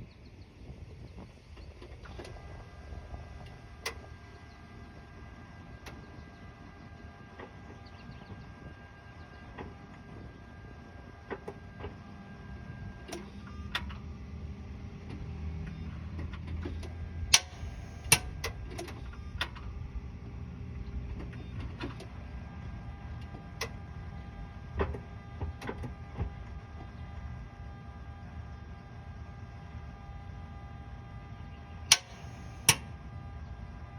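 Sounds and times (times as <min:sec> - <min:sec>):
low mechanical hum: 0:00.0 - 0:33.9
sharp starter clicks: 0:16.8 - 0:19.6, 0:31.9 - 0:32.9.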